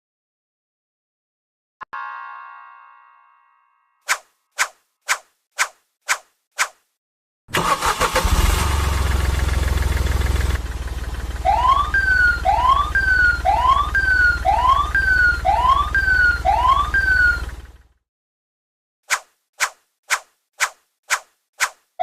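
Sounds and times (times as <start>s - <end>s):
engine humming: 7.6s - 18.0s
whooping siren: 11.4s - 17.6s.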